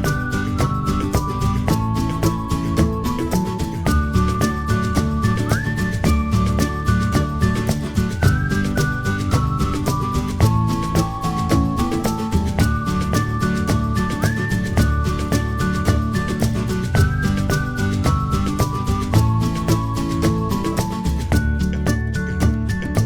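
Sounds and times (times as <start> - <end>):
upbeat music with drum beat: 0.0 - 23.0
whistled melody over guitar: 0.0 - 23.0.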